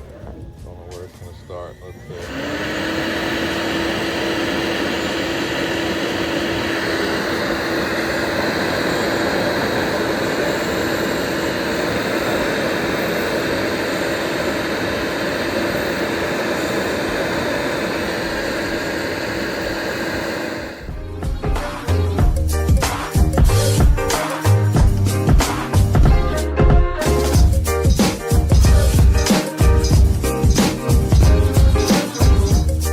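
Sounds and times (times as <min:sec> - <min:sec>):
router spindle whine: 0:00.0 - 0:21.2
router bit cutting plywood: 0:02.1 - 0:21.0.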